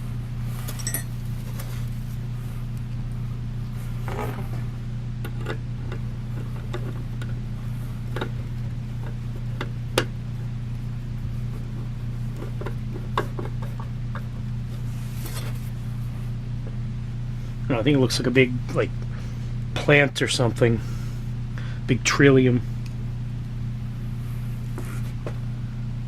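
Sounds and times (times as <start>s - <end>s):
steady low hum: 0.0s - 26.0s
clicks and knocks of fan parts: 5.2s - 7.4s, 8.1s - 10.1s, 12.3s - 14.4s.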